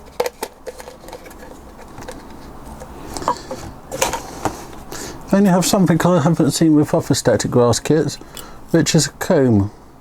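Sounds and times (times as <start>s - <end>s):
plastic parts clicking and tapping: 0.1s - 4.3s.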